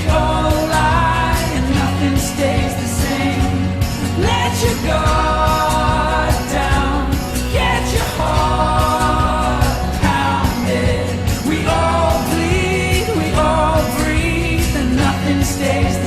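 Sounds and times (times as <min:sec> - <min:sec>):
pop song with singing: 0:00.0 - 0:16.0.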